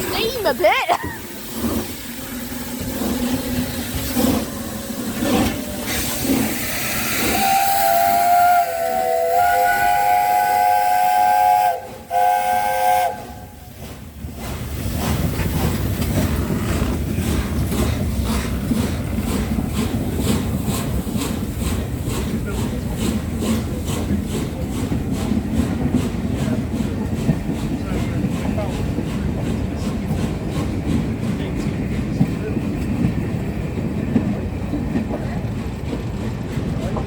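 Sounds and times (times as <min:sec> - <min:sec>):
steam locomotive hissing: 0:00.0 - 0:37.0
steam whistle blasts: 0:07.1 - 0:13.6.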